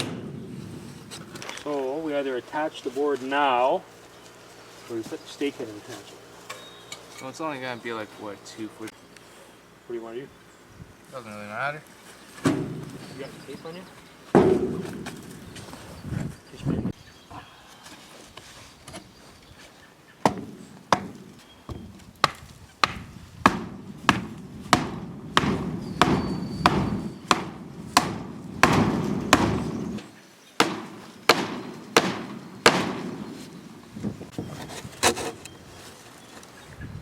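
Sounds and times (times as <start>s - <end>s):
hammer pounding wooden stake: 0.0s - 1.4s, 14.3s - 15.4s, 20.2s - 30.0s, 30.6s - 33.6s.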